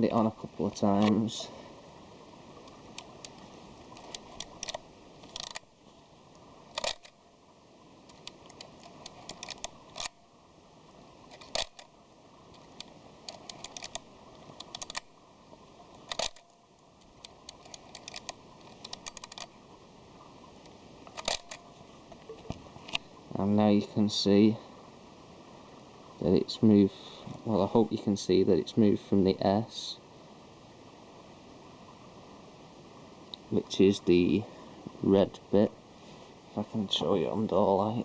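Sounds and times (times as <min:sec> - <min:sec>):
film advance lever ratcheting: 0:04.0 - 0:05.7, 0:06.7 - 0:07.2, 0:08.1 - 0:10.3, 0:11.2 - 0:11.9, 0:12.8 - 0:15.1, 0:16.0 - 0:19.6, 0:21.1 - 0:21.7.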